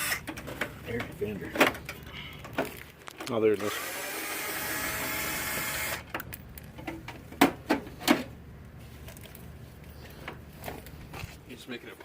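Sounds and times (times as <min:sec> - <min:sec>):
power tool whirring: 0:00.0 - 0:00.3, 0:03.6 - 0:06.1.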